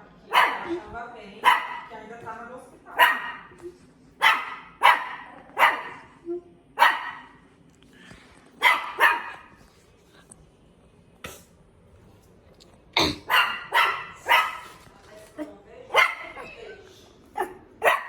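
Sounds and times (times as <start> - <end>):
dog barking: 0.3 - 0.7, 1.4 - 1.9, 3.0 - 3.6, 4.2 - 6.2, 6.8 - 7.4, 8.6 - 9.6, 13.2 - 14.8, 15.4 - 16.5, 17.4 - 18.0.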